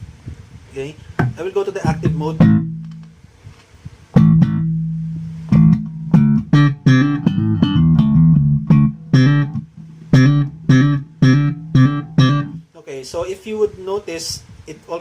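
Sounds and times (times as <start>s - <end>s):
slap bass notes: 1.2s - 3.2s, 4.1s - 12.6s.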